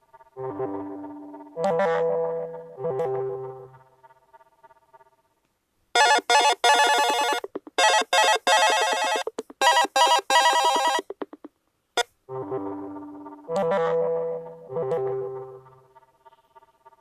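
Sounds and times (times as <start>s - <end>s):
buzzy electronic phone ring: 6.0s - 11.0s, 13.5s - 15.8s.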